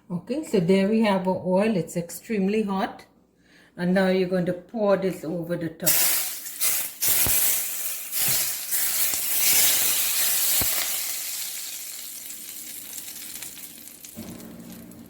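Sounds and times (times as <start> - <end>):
hot oil sizzling on vegetables: 5.9 - 15.0.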